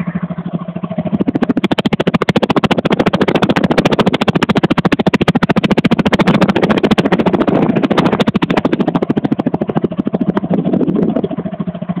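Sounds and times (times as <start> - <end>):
rotary engine knocking rapidly: 0.0 - 12.0.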